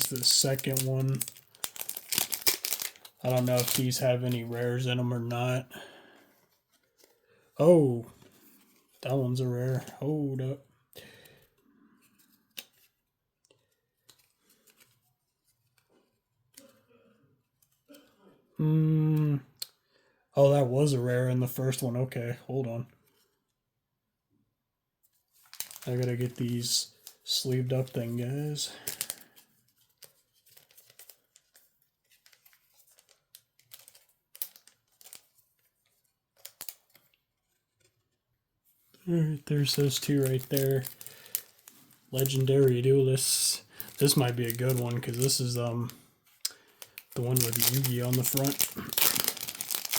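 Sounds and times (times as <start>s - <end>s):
packaging rustling: 0.0s - 5.0s, 25.3s - 38.0s, 39.3s - 49.9s
cards sliding into plastic sleeves: 39.5s - 45.7s, 46.7s - 49.9s.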